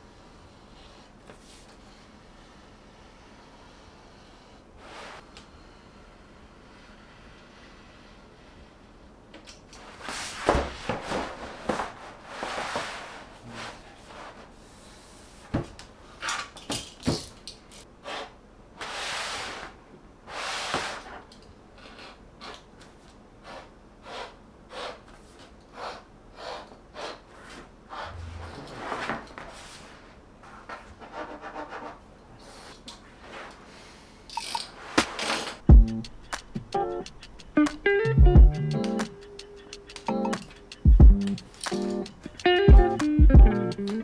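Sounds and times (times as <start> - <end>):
rubbing and scraping on fridge: 9.9 - 15.5, 23.4 - 33.6.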